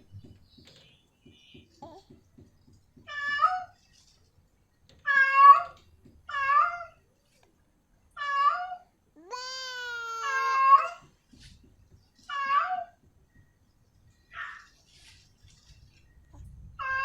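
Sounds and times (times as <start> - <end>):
cat meowing: 8.2 - 11.0, 16.8 - 17.0.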